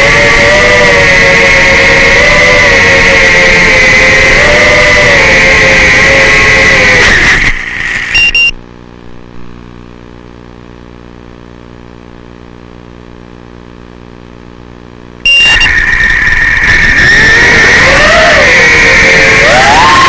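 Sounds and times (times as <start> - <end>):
drone propellers whining: 0.0 - 8.5, 15.3 - 20.0
faint low electrical buzz: 8.2 - 15.7.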